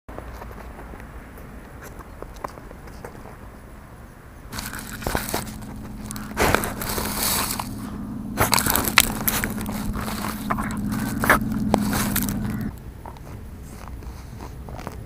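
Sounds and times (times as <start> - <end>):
steady low hum: 4.5 - 12.8
dog digging and scratching: 4.5 - 15.0.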